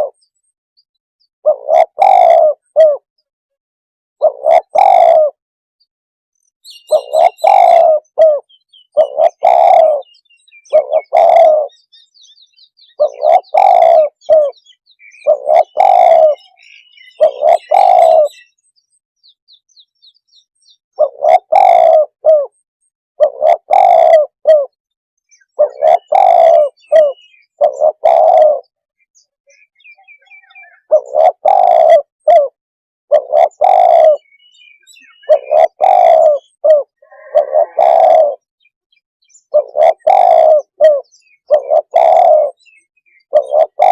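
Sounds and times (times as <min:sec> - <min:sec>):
dove cooing: 0:00.0 - 0:00.2, 0:01.4 - 0:03.1, 0:04.2 - 0:05.4, 0:06.7 - 0:12.2, 0:12.8 - 0:18.6, 0:21.0 - 0:22.6, 0:23.2 - 0:24.8, 0:25.4 - 0:28.8, 0:29.8 - 0:38.5, 0:39.3 - 0:43.9
small birds chirping: 0:00.0 - 0:03.3, 0:06.4 - 0:32.4, 0:33.1 - 0:43.9.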